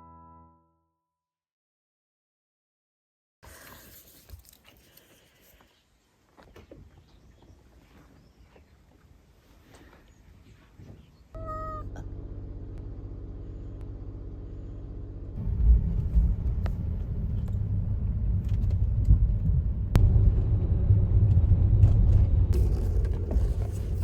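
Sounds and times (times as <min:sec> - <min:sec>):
cat meowing: 0:11.4 - 0:12.0
car engine humming: 0:11.4 - 0:24.0.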